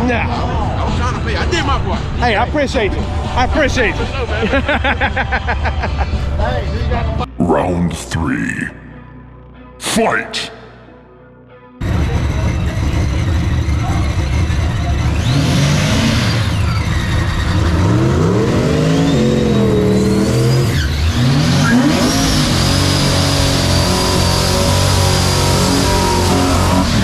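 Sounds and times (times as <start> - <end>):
race cars accelerating hard: 11.8 - 27.0.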